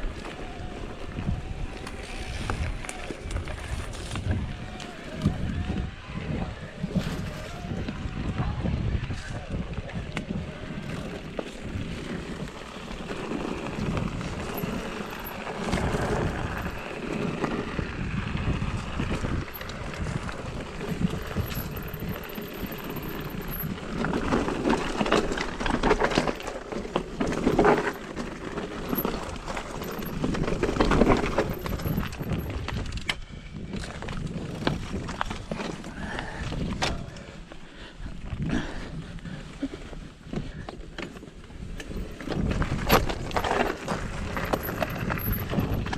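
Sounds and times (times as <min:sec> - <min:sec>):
bike rattling over bumps: 0:00.0 - 0:45.9
tyres crunching on loose rock: 0:10.6 - 0:37.2, 0:40.4 - 0:45.9.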